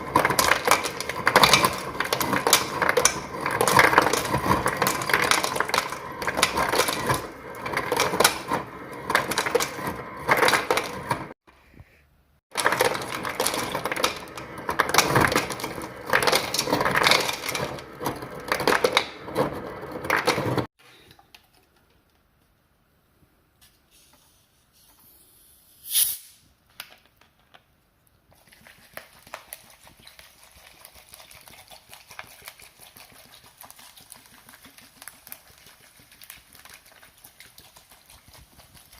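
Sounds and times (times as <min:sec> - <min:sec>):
ice cubes clattering into glass: 0:00.0 - 0:11.3, 0:12.5 - 0:20.7
faint steady crackle: 0:27.0 - 0:38.9.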